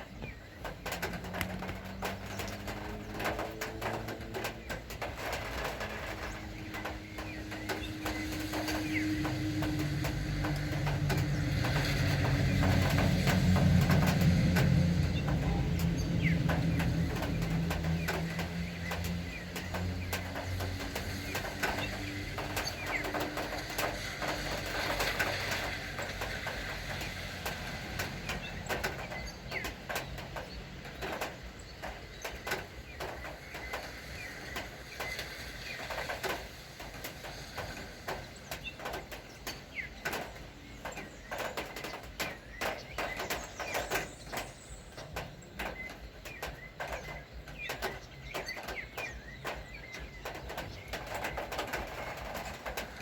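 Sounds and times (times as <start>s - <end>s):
low engine hum: 0.0s - 53.0s
rain hiss: 0.0s - 53.0s
raindrops ticking on hard surface: 0.0s - 53.0s.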